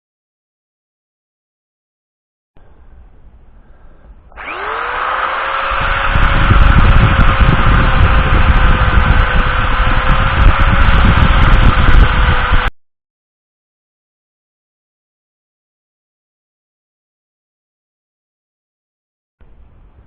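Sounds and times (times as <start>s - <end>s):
drill bit cutting rumble: 4.2s - 12.7s
cordless drill boring into wood: 4.3s - 12.7s.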